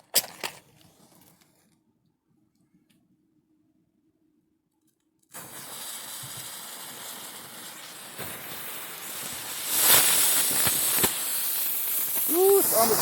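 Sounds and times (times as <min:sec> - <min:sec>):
fireworks hissing sparks: 0:05.3 - 0:13.0.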